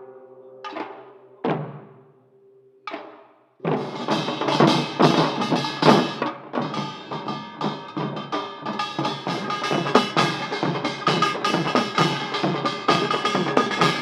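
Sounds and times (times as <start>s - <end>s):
sustained melodic notes: 0.0s - 1.4s
driving drum strikes: 3.6s - 14.0s.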